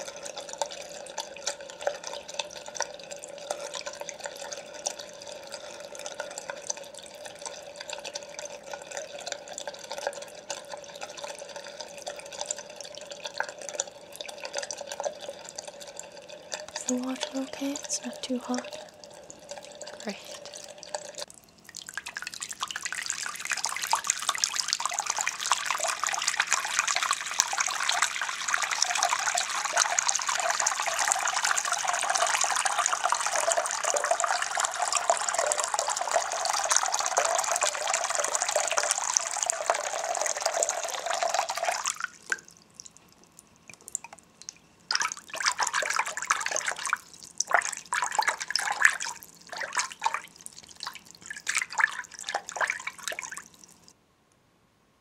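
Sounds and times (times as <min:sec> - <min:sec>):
water running from a tap: 0:00.0 - 0:42.6, 0:44.9 - 0:53.9
water drips and splashes: 0:00.0 - 0:54.0.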